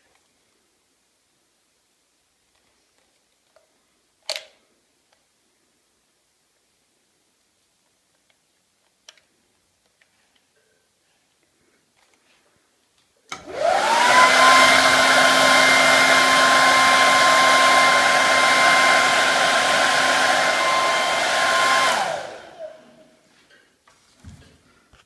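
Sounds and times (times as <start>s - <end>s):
hairdryer switch click: 13.3s - 16.1s
hairdryer motor whine: 13.3s - 23.1s.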